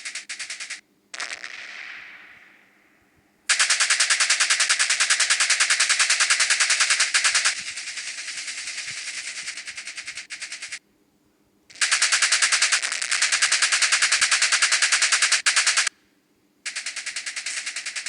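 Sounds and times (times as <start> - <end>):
machine-gun fire: 0.0 - 2.8, 3.5 - 10.8, 11.7 - 15.9, 16.6 - 18.0.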